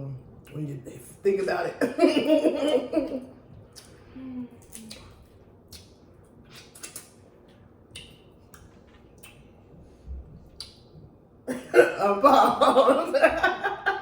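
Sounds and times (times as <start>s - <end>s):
wet chewing smacks: 4.6s - 9.8s, 10.4s - 11.0s.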